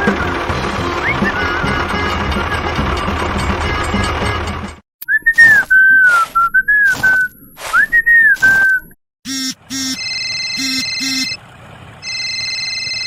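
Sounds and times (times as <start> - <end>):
whistled tune: 1.0 - 2.9, 5.0 - 9.0
short buzzy beeps: 9.3 - 10.0, 10.6 - 11.4.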